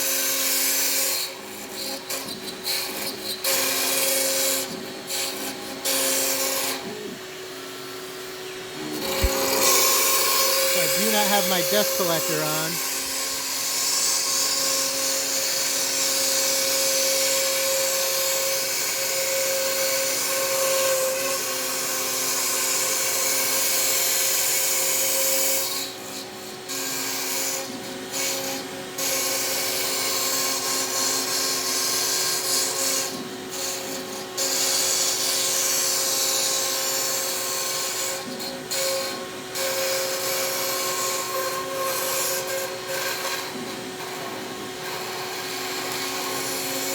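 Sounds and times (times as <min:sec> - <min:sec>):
router spindle whine: 0:06.8 - 0:15.8
loud cutting hiss: 0:09.0 - 0:13.9.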